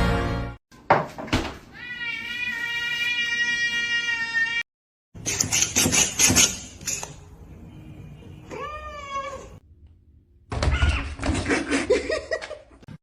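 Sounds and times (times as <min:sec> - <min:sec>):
cat meowing: 0:08.5 - 0:09.6.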